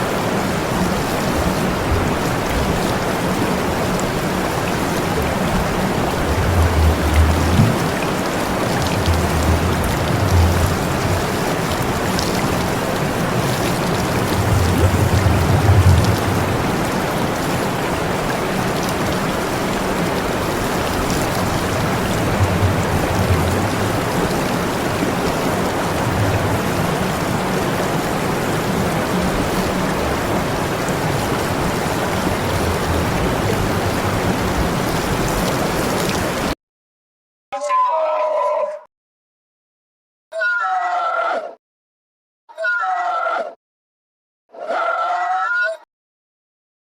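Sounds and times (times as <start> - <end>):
water spraying hiss: 0.0 - 36.6
low uneven rumble: 4.6 - 17.4, 19.8 - 35.7.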